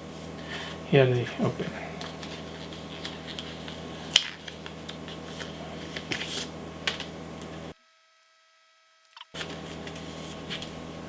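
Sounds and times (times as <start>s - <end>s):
steady electrical hum: 0.0s - 11.0s
plastic packaging crinkling: 2.0s - 7.1s.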